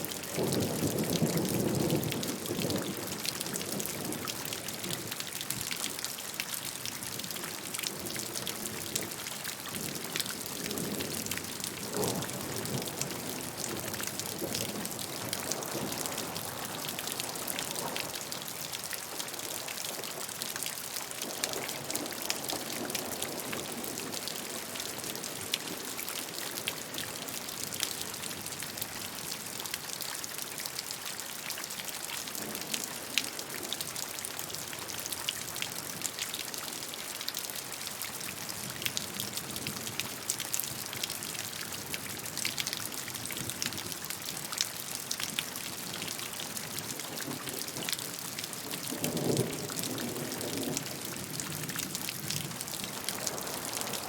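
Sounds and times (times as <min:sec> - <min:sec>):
raindrops ticking on a surface: 0:00.0 - 0:54.0.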